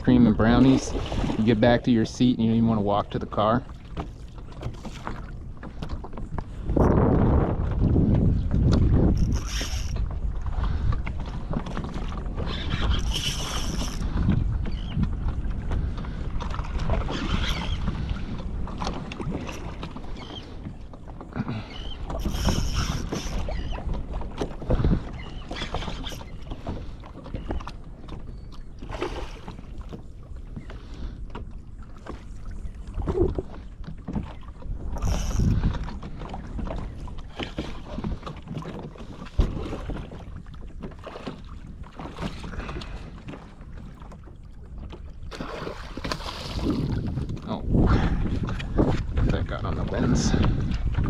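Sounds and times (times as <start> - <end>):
water slapping against kayak hull: 0.0 - 51.0
wind on microphone: 0.0 - 51.0
splashy swishes: 45.3 - 47.0.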